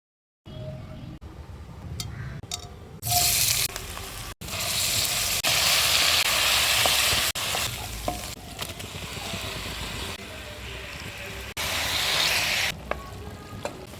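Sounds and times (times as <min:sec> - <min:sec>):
meat sizzling in a pan: 0:03.0 - 0:12.7.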